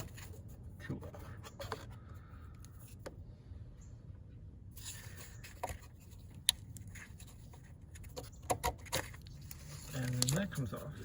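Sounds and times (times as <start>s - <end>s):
plastic scraping and clicks: 5.5s - 10.7s.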